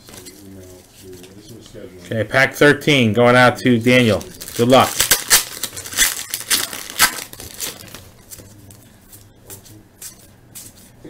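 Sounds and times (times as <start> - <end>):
wrapper tearing and crinkling: 3.9 - 8.2.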